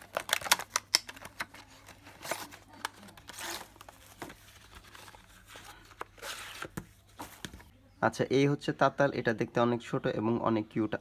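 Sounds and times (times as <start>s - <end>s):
packaging clicks and taps: 0.0s - 7.7s
packaging rustling and crinkling: 0.0s - 7.7s.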